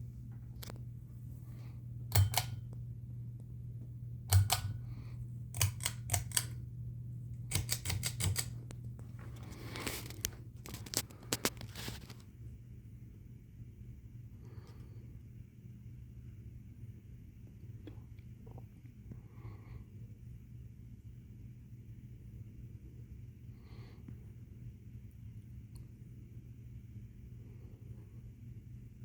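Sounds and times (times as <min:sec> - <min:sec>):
ceiling fan motor humming: 0:00.0 - 0:29.0
sharp clicks: 0:02.1 - 0:02.8, 0:04.3 - 0:04.9, 0:05.5 - 0:06.6, 0:07.5 - 0:08.7.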